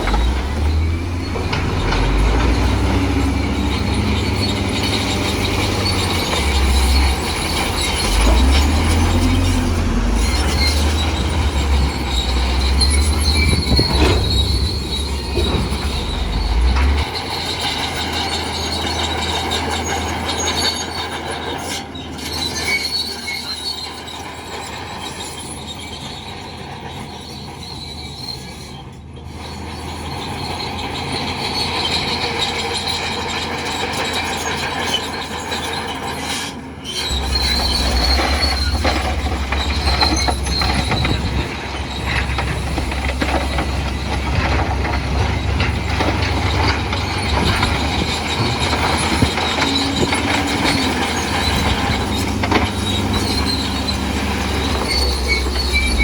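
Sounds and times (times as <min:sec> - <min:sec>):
crawler tracks squealing: 0:00.0 - 0:56.0
diesel engine rumbling: 0:00.0 - 0:56.0.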